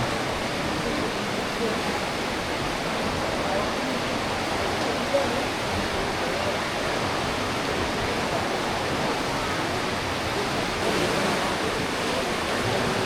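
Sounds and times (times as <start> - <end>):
river roaring through gorge: 0.0 - 13.0.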